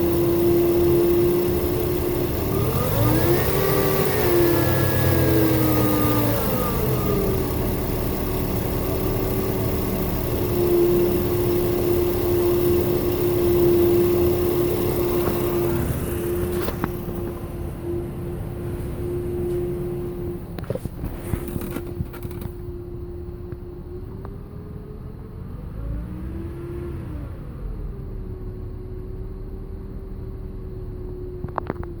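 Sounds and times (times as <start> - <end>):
steady humming tone: 0.0 - 21.0
car engine low rumble: 0.0 - 32.0.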